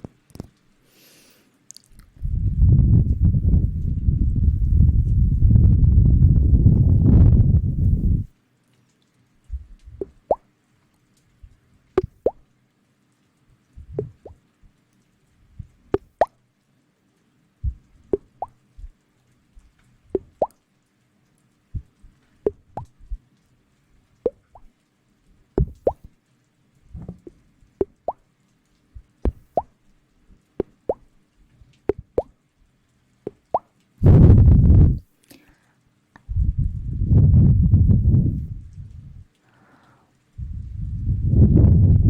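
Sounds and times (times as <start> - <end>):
faint steady hum: 0.0 - 42.0
soft wet plops rising in pitch: 9.5 - 10.5, 11.4 - 12.5, 13.8 - 14.4, 17.6 - 19.0, 19.6 - 20.6, 21.8 - 23.3, 24.2 - 24.8, 25.6 - 26.2, 29.0 - 29.8, 30.6 - 31.1, 31.7 - 32.4, 33.3 - 33.8.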